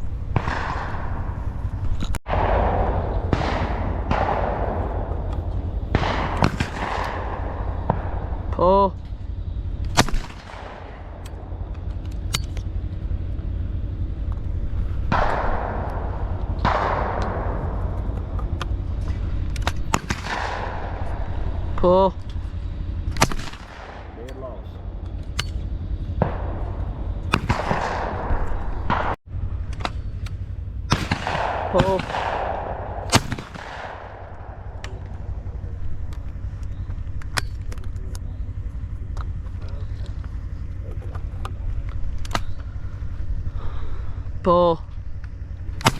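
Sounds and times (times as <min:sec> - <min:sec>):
shotgun shot: 0:00.0 - 0:12.7, 0:14.8 - 0:36.2, 0:45.7 - 0:45.9
low rumble: 0:00.0 - 0:45.9
soft rushing bursts: 0:00.0 - 0:45.9
sharp clicks: 0:03.0 - 0:43.2.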